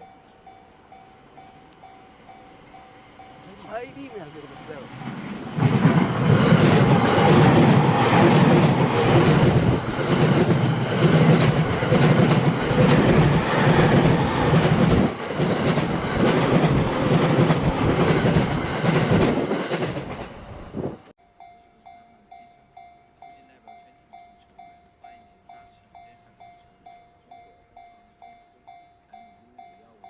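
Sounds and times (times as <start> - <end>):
train wheels clattering: 2.6 - 21.1.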